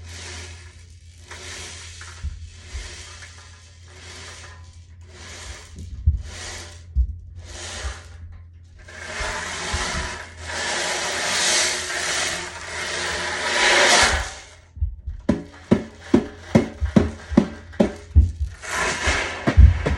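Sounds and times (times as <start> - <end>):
ocean drum beads rolling: 0.0 - 8.2, 8.8 - 14.6, 15.2 - 19.9
dull low thumps: 2.2 - 3.0, 5.8 - 7.5, 14.6 - 19.9.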